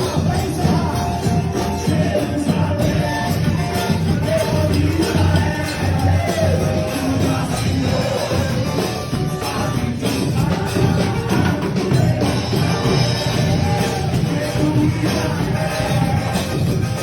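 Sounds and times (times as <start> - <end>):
band playing worship music: 0.0 - 17.0
jingling percussion: 0.0 - 17.0.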